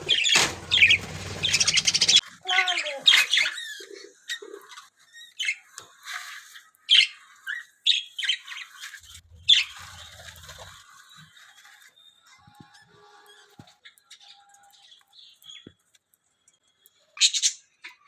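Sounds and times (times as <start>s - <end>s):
budgerigars chattering: 0.0s - 2.2s.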